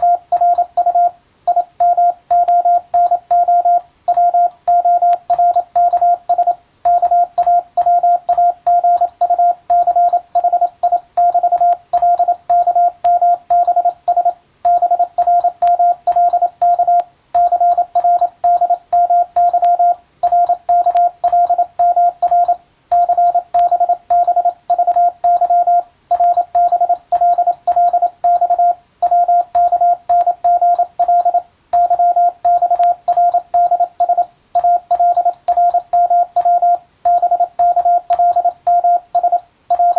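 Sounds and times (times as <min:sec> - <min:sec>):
morse code tone: 0:00.0 - 0:39.9.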